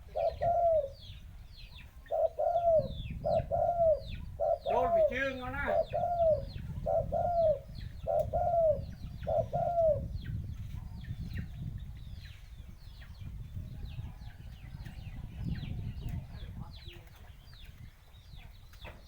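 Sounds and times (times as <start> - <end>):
dove cooing: 0.0 - 10.2
small birds chirping: 0.0 - 19.0.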